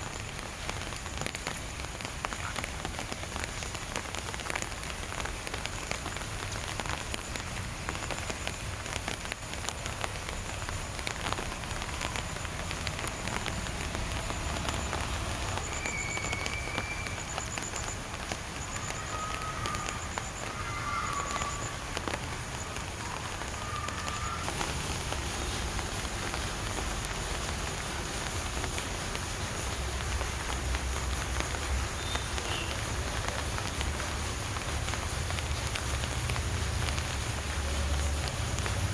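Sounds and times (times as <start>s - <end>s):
steady rain falling: 0.0s - 38.9s
faint short whistled notes: 15.6s - 17.9s.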